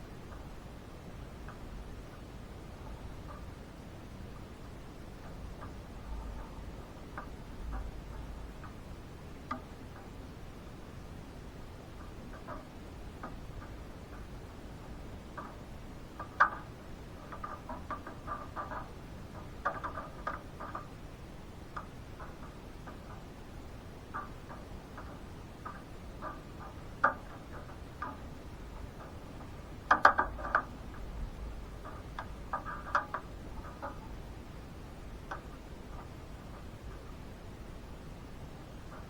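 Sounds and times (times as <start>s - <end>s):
steady hiss: 0.0s - 39.0s
rain dripping on hard surface: 21.7s - 37.4s.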